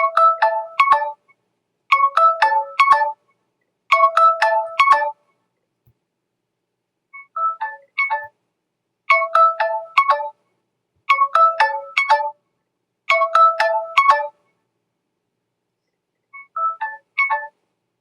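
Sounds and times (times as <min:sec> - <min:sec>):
phone ringtone melody: 0:00.0 - 0:01.2, 0:01.9 - 0:03.2, 0:03.9 - 0:05.2, 0:09.1 - 0:10.4, 0:11.1 - 0:12.4, 0:13.1 - 0:14.4.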